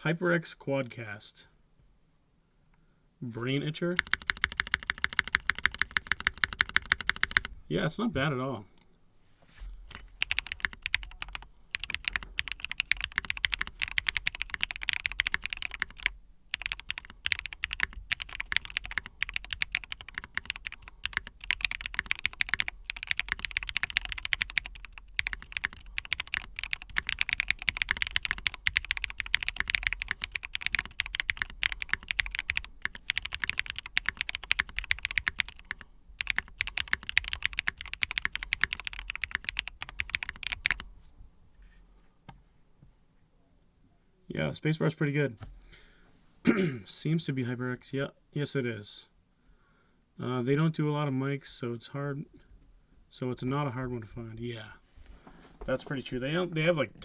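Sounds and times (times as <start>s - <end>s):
mechanical keyboard typing: 4.0s - 7.5s, 9.9s - 40.8s.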